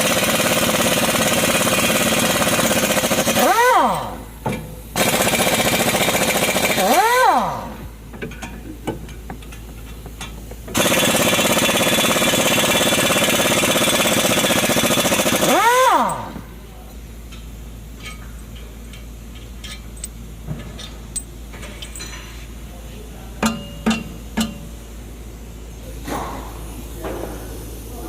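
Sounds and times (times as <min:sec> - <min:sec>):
impact wrench hammering: 0:00.0 - 0:16.6, 0:23.4 - 0:24.8
metal tools clinking: 0:18.0 - 0:22.5.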